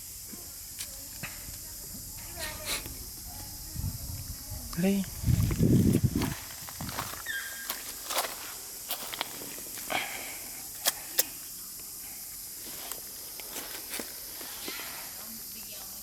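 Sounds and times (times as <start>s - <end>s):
short high squeak: 7.2s - 7.8s.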